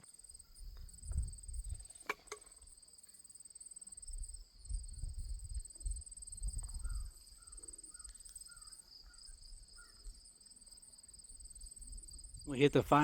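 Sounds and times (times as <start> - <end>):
insects trilling: 0.0 - 13.0
faint chirps: 6.4 - 10.2.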